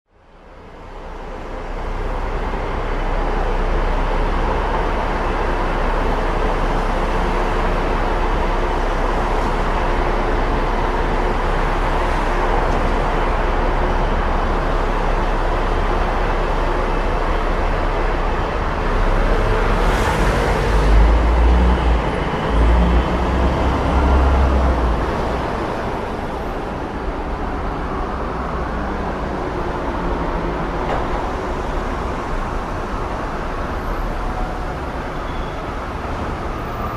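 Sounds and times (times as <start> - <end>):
passing traffic and tyre noise: 0.1 - 36.9
deep vehicle rumble: 0.2 - 36.9.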